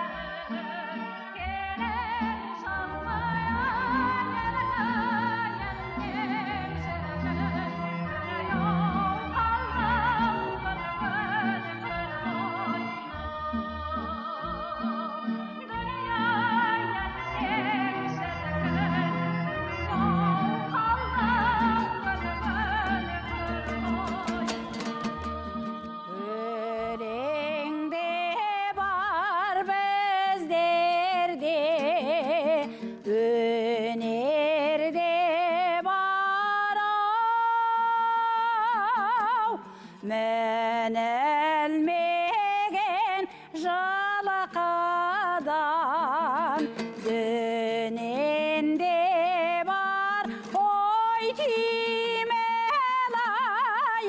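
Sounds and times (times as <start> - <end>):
instrumental accompaniment: 0.0 - 27.6, 46.1 - 48.6
woman singing folk song: 0.0 - 54.0.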